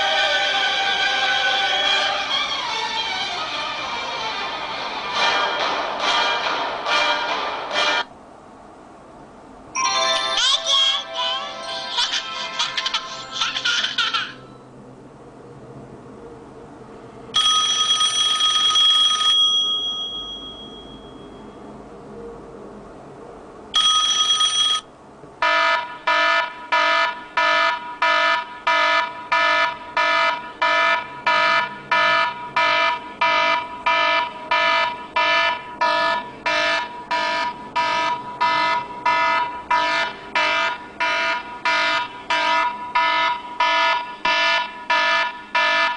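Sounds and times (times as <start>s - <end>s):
phone alarm ringtone beeps: 17.4s - 21.6s, 23.8s - 24.9s, 25.5s - 45.9s.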